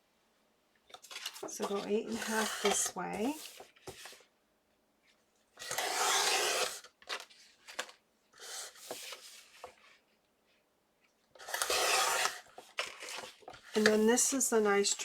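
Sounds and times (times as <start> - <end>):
paper handling scrapes: 1.0 - 4.3, 5.6 - 10.0, 11.4 - 15.0
paper trimmer blade slicing: 1.6 - 2.9, 5.6 - 6.9, 11.4 - 14.0.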